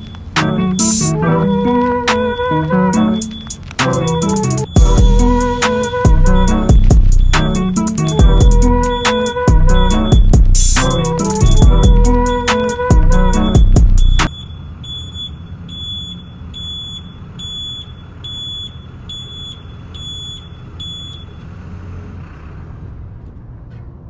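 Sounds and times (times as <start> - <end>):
low steady rumble: 0.0 - 14.3
vehicle warning chime beeping: 0.0 - 21.6.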